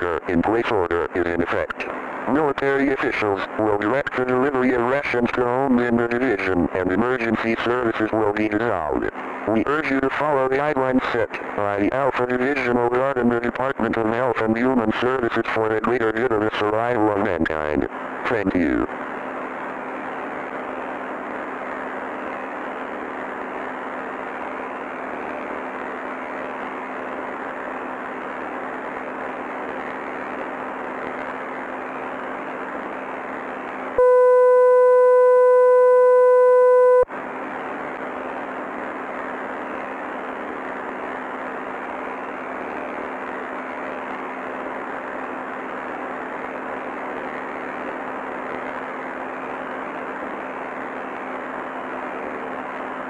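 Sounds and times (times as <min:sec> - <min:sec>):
faint low hum: 0:34.0 - 0:37.1
loud steady electronic tone: 0:34.0 - 0:37.1.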